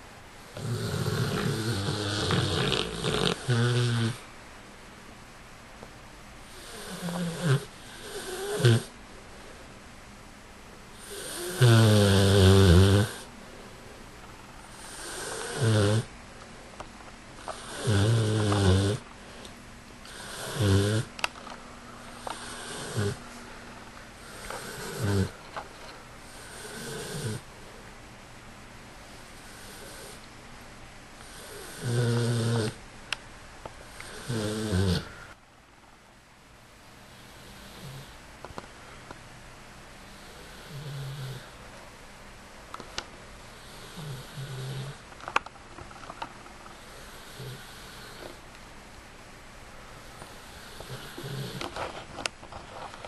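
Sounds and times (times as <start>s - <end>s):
dog snoring: 0.5s - 4.2s, 6.5s - 8.9s, 11.0s - 13.3s, 14.6s - 16.1s, 17.4s - 19.0s, 20.0s - 21.1s, 22.2s - 23.2s, 24.2s - 25.4s, 26.3s - 27.5s, 29.4s - 30.2s, 31.2s - 32.8s, 33.9s - 35.2s, 37.1s - 38.2s, 40.0s - 41.6s, 43.6s - 45.0s, 46.7s - 48.4s, 50.2s - 51.8s.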